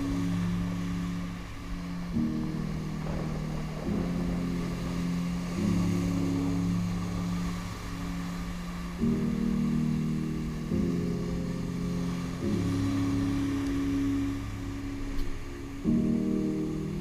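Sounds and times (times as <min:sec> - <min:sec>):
low synth chords: 0:00.0 - 0:17.0.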